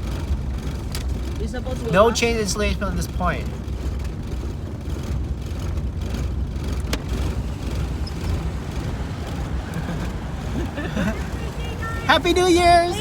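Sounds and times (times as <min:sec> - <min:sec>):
vehicle engines rumbling: 0:00.0 - 0:13.0.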